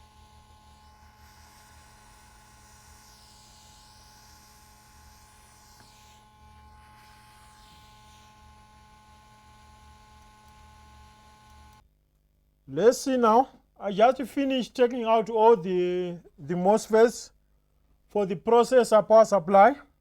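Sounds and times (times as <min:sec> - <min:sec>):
electrical hum: 0:00.0 - 0:11.8
hot air station hiss: 0:00.7 - 0:08.7.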